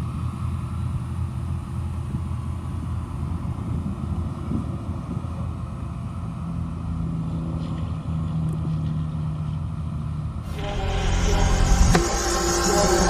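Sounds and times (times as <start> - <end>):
music: 10.5 - 13.0.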